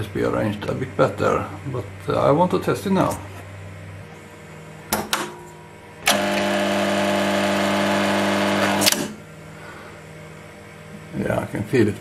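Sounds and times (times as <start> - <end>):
motor buzzing hum: 3.5 - 9.4.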